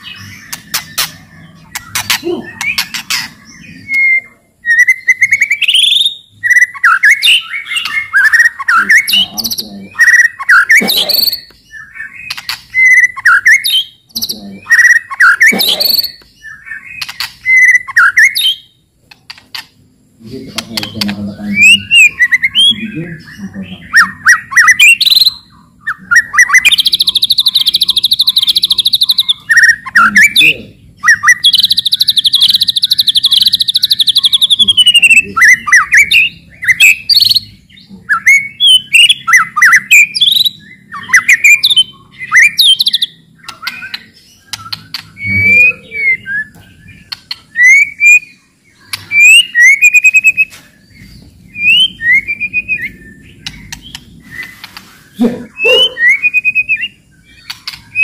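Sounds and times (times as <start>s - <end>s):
bird rattling trills: 0.0s - 3.6s
bird whistled chirping phrases: 0.0s - 18.7s, 20.4s - 50.6s, 51.5s - 58.0s.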